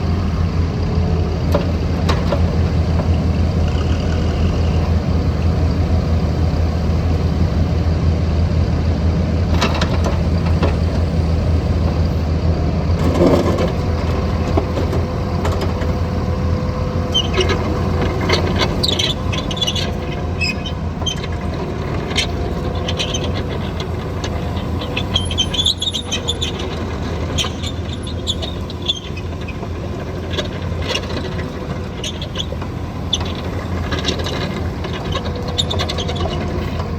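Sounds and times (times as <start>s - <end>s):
diesel engine running: 0.0s - 36.9s
steady whine: 0.0s - 36.9s
metal parts squeaking and clicking: 24.6s - 29.6s.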